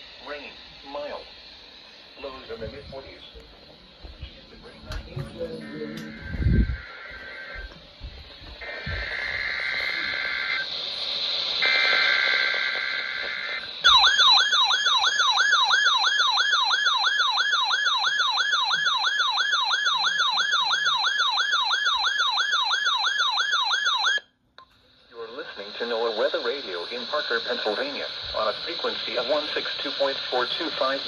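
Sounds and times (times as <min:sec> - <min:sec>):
warbling siren-like alert tone: 0:04.6 - 0:07.7, 0:13.9 - 0:24.2.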